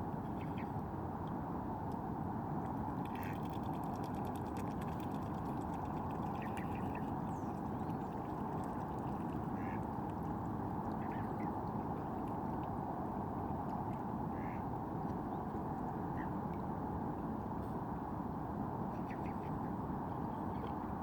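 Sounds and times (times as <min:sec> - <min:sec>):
ducks quacking: 0:09.6 - 0:09.8.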